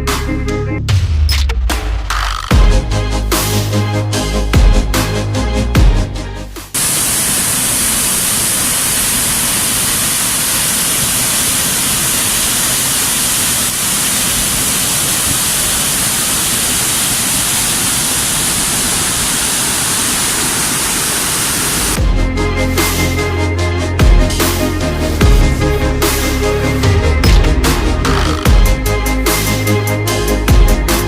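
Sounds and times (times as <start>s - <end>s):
waterfall rushing: 6.8s - 22.0s.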